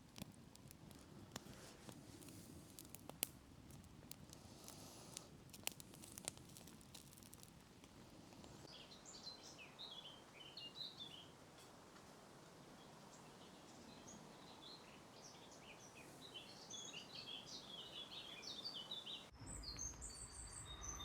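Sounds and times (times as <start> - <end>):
bird chirping: 13.1 - 21.0.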